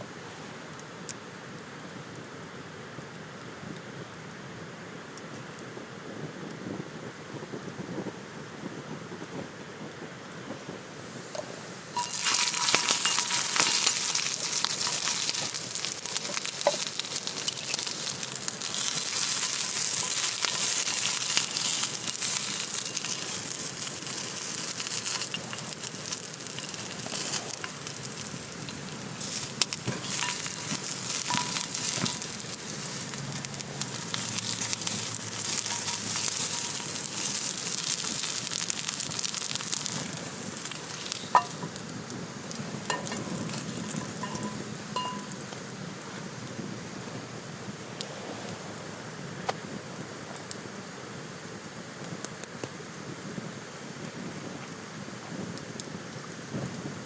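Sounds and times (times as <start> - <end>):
food sizzling in a hot pan: 11.1 - 46.7.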